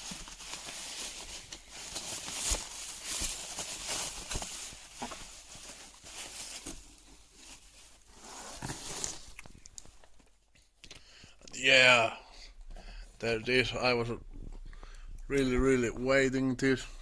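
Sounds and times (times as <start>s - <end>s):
cardboard box rustling: 0.0s - 9.4s.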